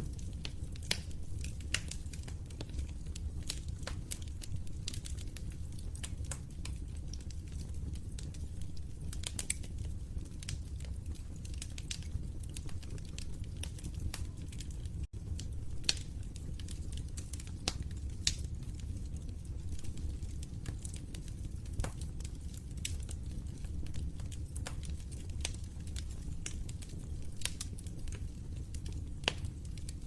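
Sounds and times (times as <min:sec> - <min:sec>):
fireplace fire crackling: 0:00.0 - 0:30.0.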